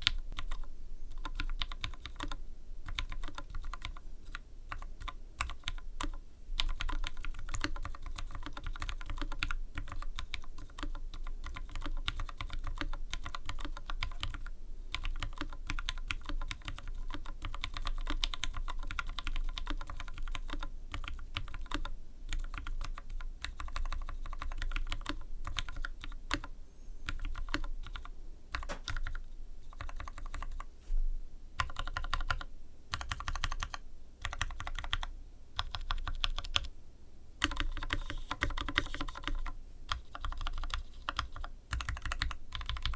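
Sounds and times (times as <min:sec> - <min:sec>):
mechanical keyboard typing: 0:00.0 - 0:26.5, 0:27.1 - 0:30.7, 0:31.6 - 0:36.7, 0:37.4 - 0:42.9.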